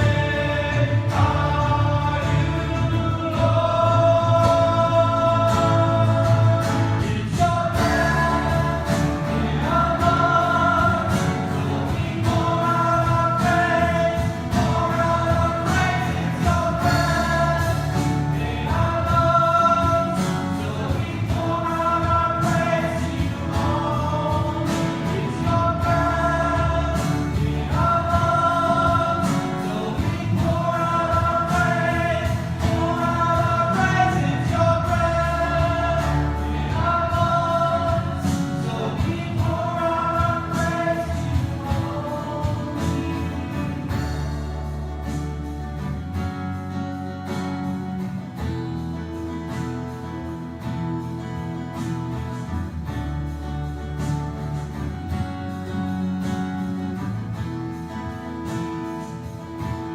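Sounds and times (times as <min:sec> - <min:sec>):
group singing a slow hymn: 0:00.0 - 0:45.5.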